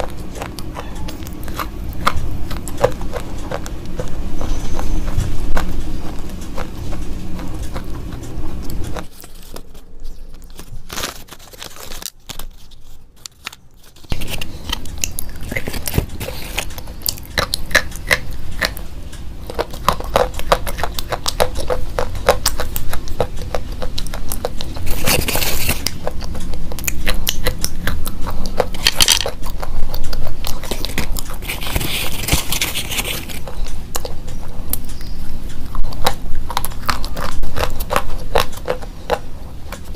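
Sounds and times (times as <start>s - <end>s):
crisp crunching of chewing: 0.0s - 39.9s.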